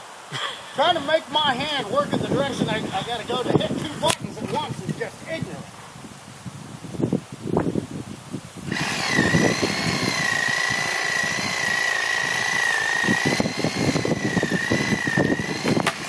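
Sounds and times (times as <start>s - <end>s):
reciprocating saw cutting wood: 8.7s - 16.0s.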